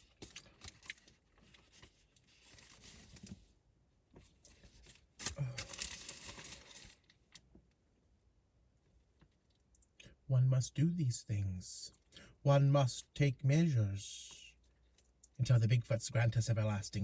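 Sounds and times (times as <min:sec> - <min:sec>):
food packaging crinkling: 0:00.0 - 0:03.2, 0:04.5 - 0:07.2.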